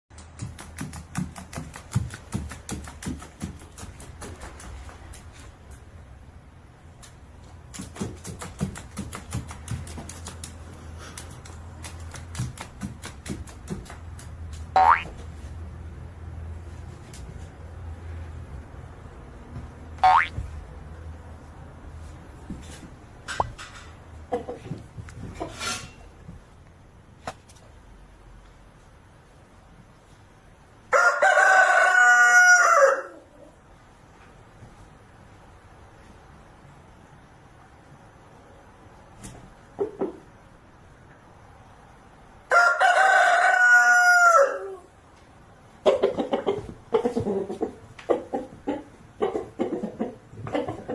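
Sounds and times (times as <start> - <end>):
chicken clucking: 24.2 - 24.8, 45.7 - 50.9
rooster crowing: 30.9 - 33.3, 42.5 - 44.9.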